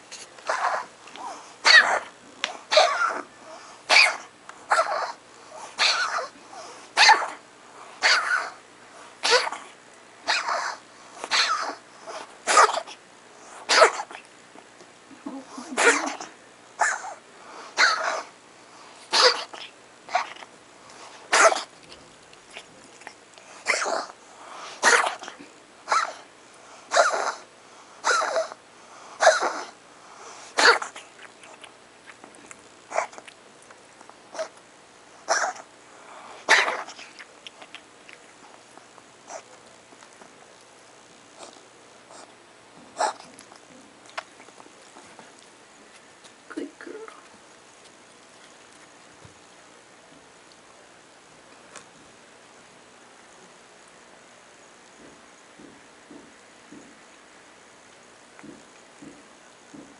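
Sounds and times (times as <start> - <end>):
cat coughing: 5.8 - 6.3, 9.2 - 9.7, 12.5 - 13.0, 13.7 - 14.2, 15.2 - 17.2, 19.1 - 20.3, 21.3 - 21.7, 23.6 - 24.1, 24.8 - 26.2, 26.9 - 27.4, 28.0 - 28.6, 29.2 - 29.7, 30.6 - 31.0, 36.5 - 37.0.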